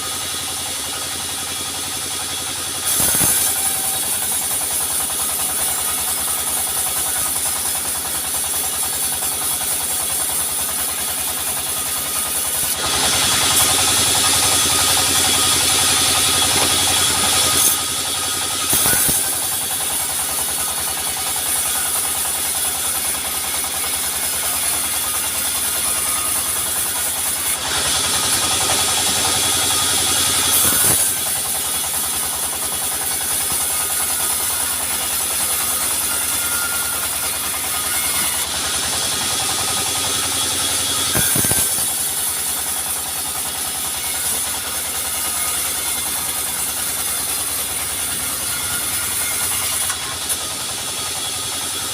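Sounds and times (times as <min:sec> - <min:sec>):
sawmill engine drone: 0:00.0 - 0:51.9.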